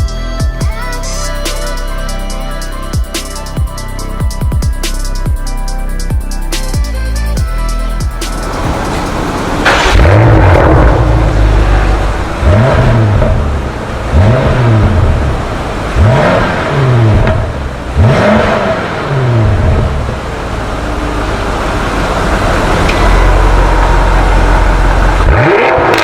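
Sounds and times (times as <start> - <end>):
car engine revving: 0.7 - 26.0.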